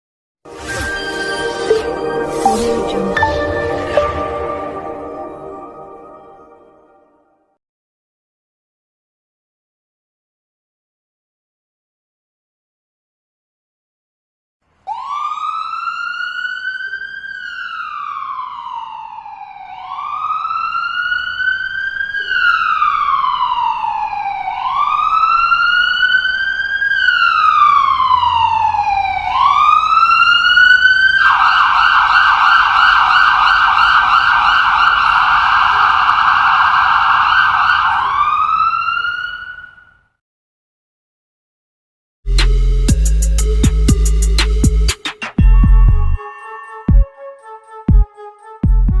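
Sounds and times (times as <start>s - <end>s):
ambulance siren: 0.8s - 7.2s, 14.8s - 40.2s, 45.4s - 49.0s.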